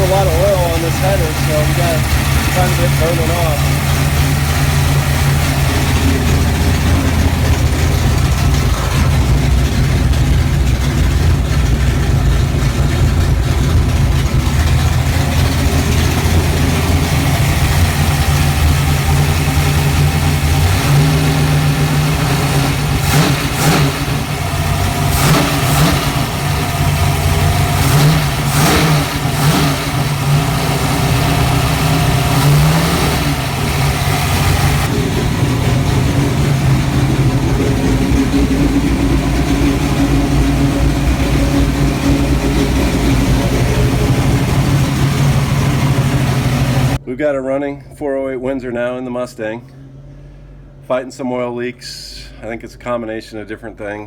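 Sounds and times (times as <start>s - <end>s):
engine knocks: 0.0s - 47.0s
engine idling: 0.0s - 47.1s.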